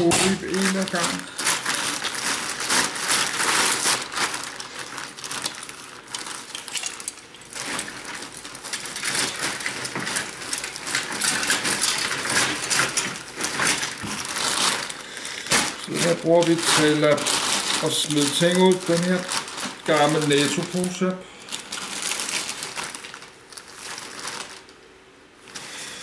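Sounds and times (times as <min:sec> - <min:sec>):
plastic bags rustling: 0:00.0 - 0:26.0
small clinks and knocks: 0:06.5 - 0:07.5.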